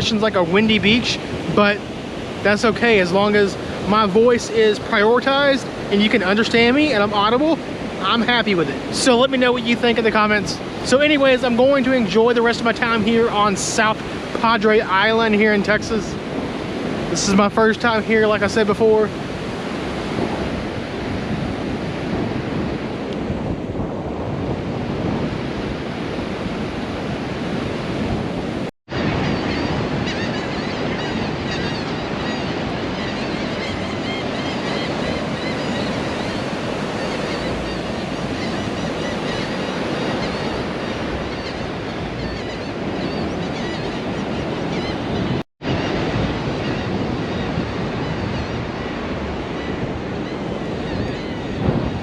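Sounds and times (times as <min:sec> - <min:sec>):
ocean surf breaking: 0:00.0 - 0:52.0
wind buffeting microphone: 0:00.0 - 0:52.0.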